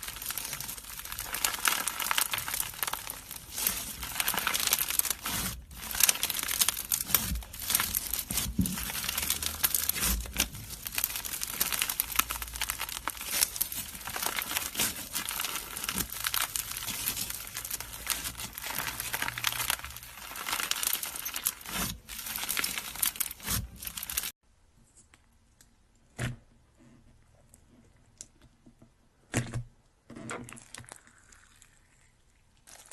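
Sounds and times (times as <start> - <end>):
slime squeezed and stretched: 0.0 - 24.3.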